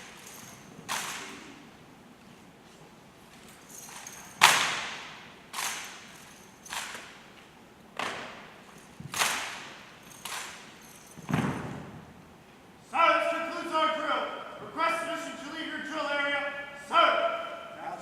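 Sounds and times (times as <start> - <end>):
rifles slapped in unison: 0.9 - 1.5, 9.1 - 10.7.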